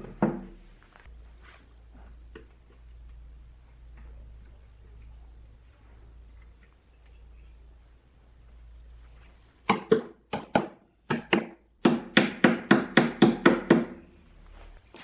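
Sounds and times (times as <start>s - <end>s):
hammer striking wood: 9.7s - 14.1s.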